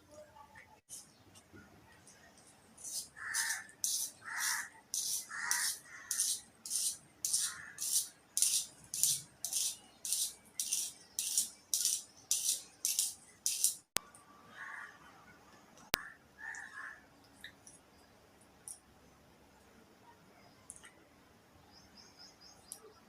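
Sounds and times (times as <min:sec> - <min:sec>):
pencil wood crunching: 0:02.8 - 0:13.8.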